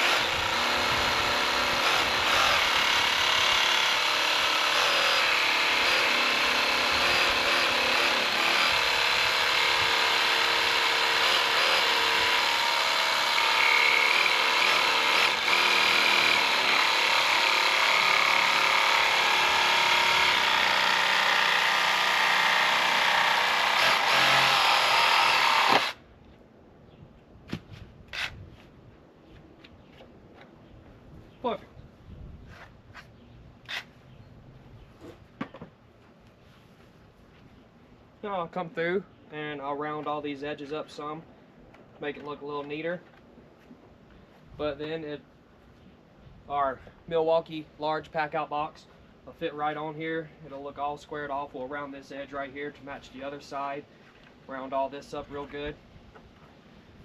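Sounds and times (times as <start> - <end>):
power tool cutting plastic: 0.0 - 26.0.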